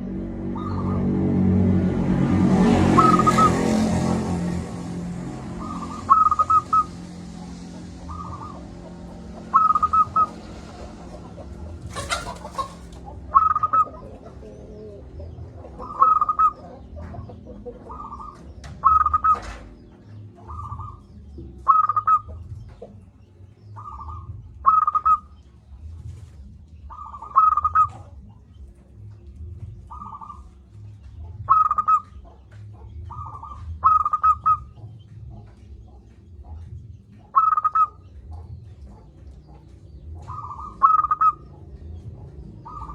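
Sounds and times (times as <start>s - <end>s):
passing vehicle: 0.0s - 42.9s
dove cooing: 5.4s - 23.0s, 26.9s - 28.4s, 29.7s - 42.9s.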